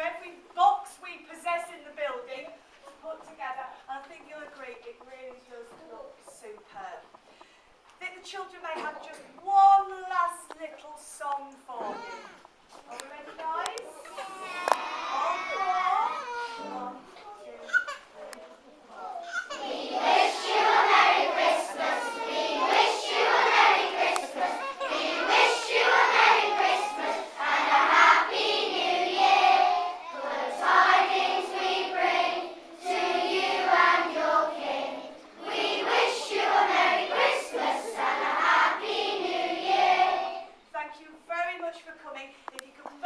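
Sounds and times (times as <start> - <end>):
children's choir singing: 19.5 - 40.6.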